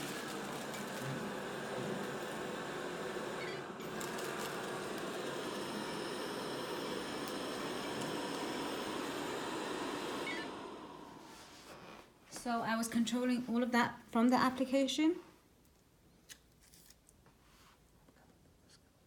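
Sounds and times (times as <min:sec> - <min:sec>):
robot vacuum cleaner whirring: 0:00.0 - 0:12.0.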